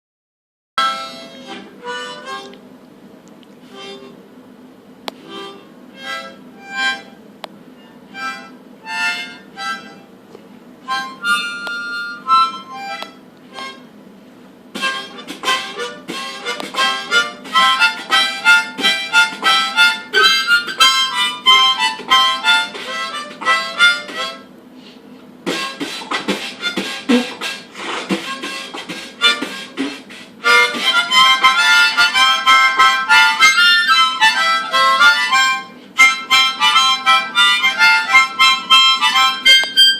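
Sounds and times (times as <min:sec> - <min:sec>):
harmonica notes: 0:00.8 - 0:02.6, 0:03.6 - 0:10.2, 0:10.8 - 0:14.1, 0:14.7 - 0:39.9
beatboxing: 0:14.8 - 0:24.4, 0:25.4 - 0:35.3.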